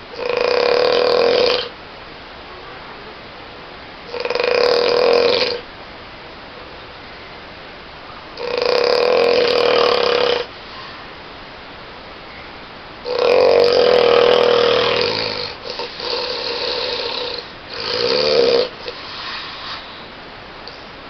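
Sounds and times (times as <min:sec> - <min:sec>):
person snoring loudly: 0:00.1 - 0:01.7, 0:04.1 - 0:05.6, 0:08.4 - 0:10.5, 0:13.0 - 0:20.0.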